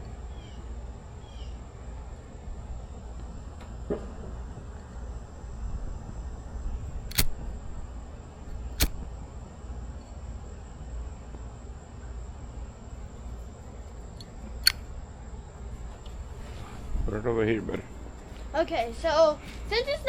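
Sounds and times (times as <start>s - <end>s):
low steady rumble: 0.0s - 20.0s
sharp clicks: 7.1s - 7.4s, 8.8s - 9.1s, 14.1s - 14.9s.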